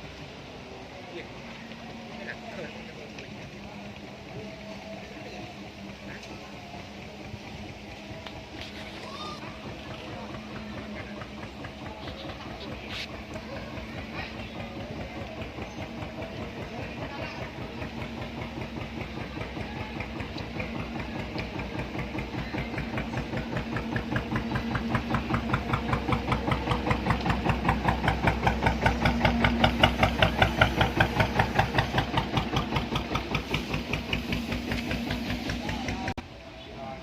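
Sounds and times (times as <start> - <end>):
boat engine chugging: 0.0 - 36.2.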